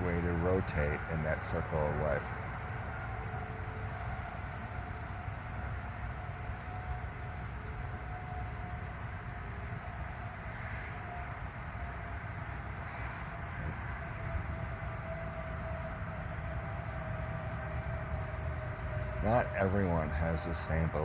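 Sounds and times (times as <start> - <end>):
high thin whine: 0.0 - 8.9, 12.9 - 21.0
background hiss: 0.0 - 21.0.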